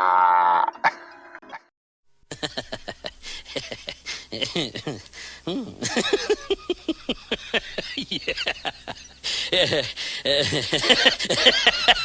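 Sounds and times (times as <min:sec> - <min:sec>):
animal yelping calls: 0:00.0 - 0:01.0.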